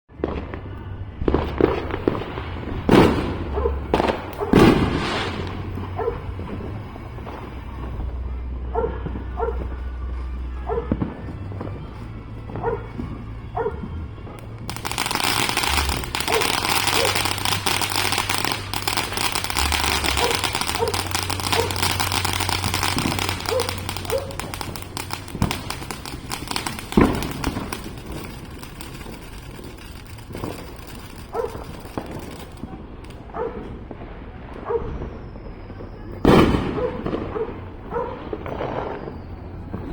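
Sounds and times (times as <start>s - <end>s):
firework fountain crackling hiss: 1.4s - 8.3s, 14.4s - 33.2s
dog barking: 3.5s - 3.8s, 6.0s - 6.2s, 8.7s - 9.6s, 10.6s - 10.9s, 12.6s - 12.9s, 16.3s - 17.2s, 20.2s - 21.8s, 23.4s - 24.4s, 31.3s - 31.7s, 33.3s - 33.7s, 34.6s - 34.9s, 36.8s - 38.2s
sharp crack: 14.4s - 33.3s.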